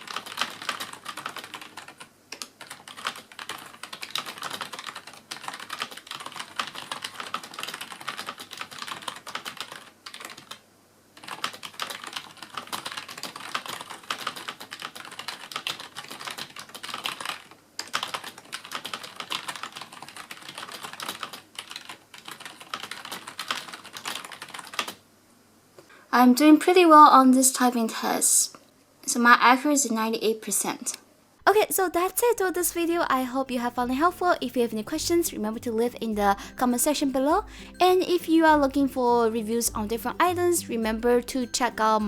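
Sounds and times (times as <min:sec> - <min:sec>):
keyboard typing clicks: 0:31.5 - 0:42.0.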